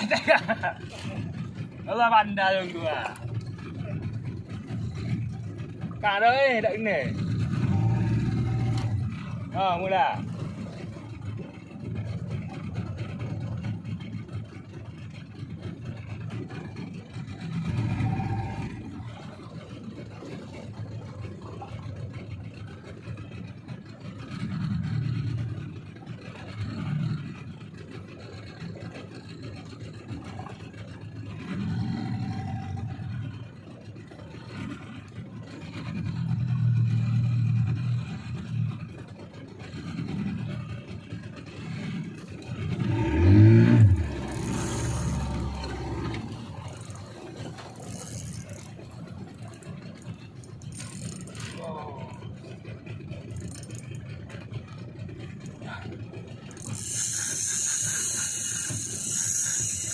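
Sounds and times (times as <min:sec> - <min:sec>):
outboard engine running: 0:00.0 - 0:59.9
rumble of wind and water: 0:00.0 - 0:59.9.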